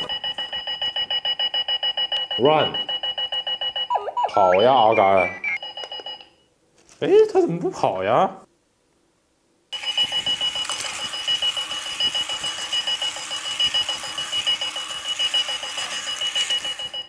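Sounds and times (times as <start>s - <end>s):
electronic alarm clock beeping: 0.0s - 6.2s, 9.7s - 17.0s.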